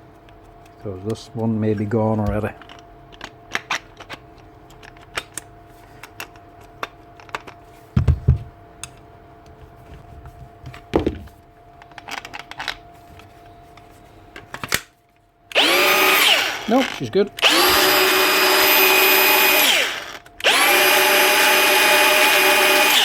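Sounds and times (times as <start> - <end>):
heavy thumps: 8.0 - 8.6.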